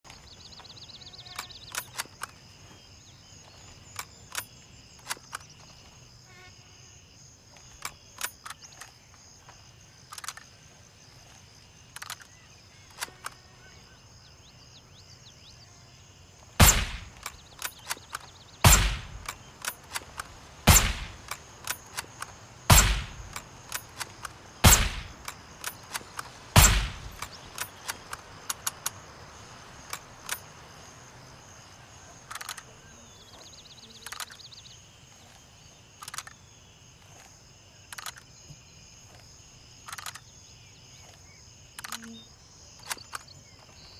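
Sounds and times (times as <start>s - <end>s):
sharp clicks: 1.3s - 2.4s, 10.1s - 10.5s, 11.9s - 13.4s, 16.6s - 29.0s, 32.2s - 32.7s, 34.0s - 34.5s, 36.0s - 36.4s, 37.9s - 38.3s, 39.8s - 40.3s, 41.7s - 42.2s
rifle bolt clicks: 10.1s - 10.5s, 12.0s - 13.4s, 16.6s - 29.0s, 32.3s - 32.7s, 34.0s - 34.4s, 36.0s - 36.4s, 37.9s - 38.3s, 39.8s - 40.3s, 41.8s - 42.1s
suppressed rifle shots: 16.6s - 20.0s, 20.6s - 22.1s, 22.7s - 27.9s.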